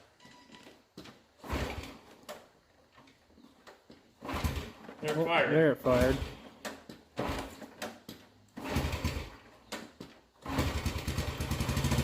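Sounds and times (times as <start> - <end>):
motorcycle engine kick-starting: 1.4 - 2.6, 3.6 - 12.0
motorcycle engine running: 10.4 - 12.0.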